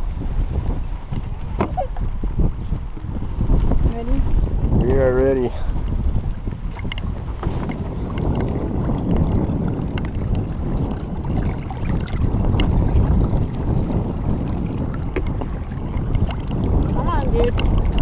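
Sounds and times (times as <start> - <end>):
choppy water: 0.0 - 18.0
wind blowing across microphone: 0.0 - 18.0
light knocks on boat: 15.1 - 15.5.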